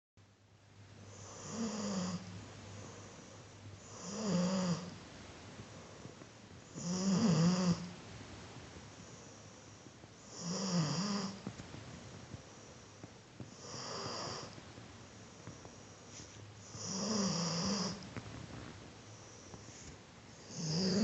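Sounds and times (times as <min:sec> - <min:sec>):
dog snoring: 0:01.1 - 0:05.0, 0:05.6 - 0:07.9, 0:09.0 - 0:11.6, 0:12.5 - 0:14.6, 0:15.4 - 0:18.1, 0:19.1 - 0:21.0.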